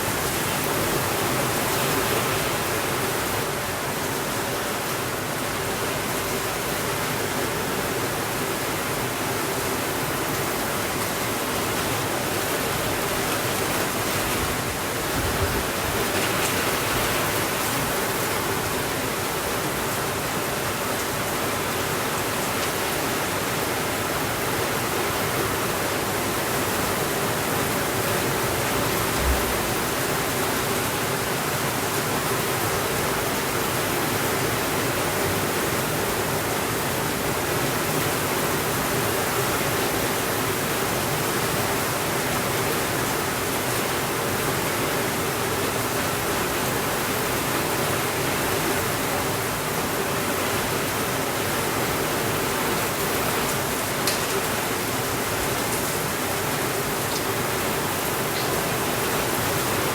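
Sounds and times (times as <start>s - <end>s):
heavy rain: 0.0s - 59.9s
low thumps: 28.9s - 30.1s.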